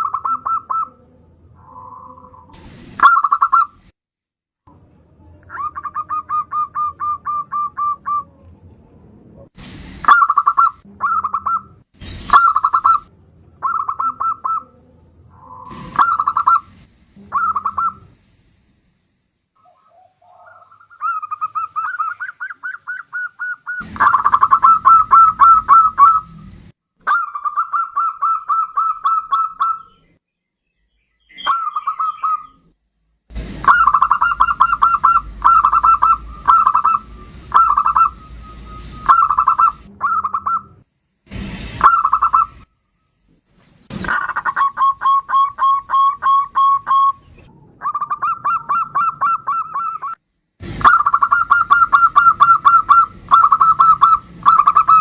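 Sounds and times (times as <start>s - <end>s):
dove cooing: 0.0s - 3.7s, 5.5s - 8.5s, 12.3s - 18.1s, 19.6s - 26.3s, 33.7s - 40.7s, 41.8s - 42.6s, 44.0s - 50.2s, 50.8s - 55.0s.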